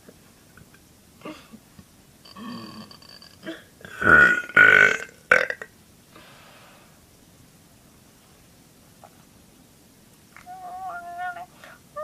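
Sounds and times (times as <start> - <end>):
girl belching loudly: 2.3 - 5.7.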